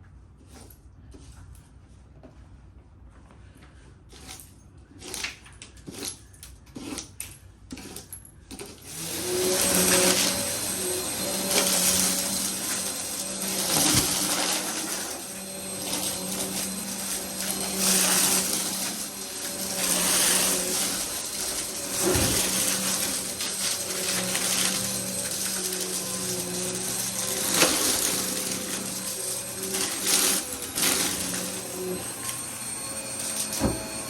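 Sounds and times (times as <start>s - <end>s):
vacuum cleaner running: 8.9s - 34.0s.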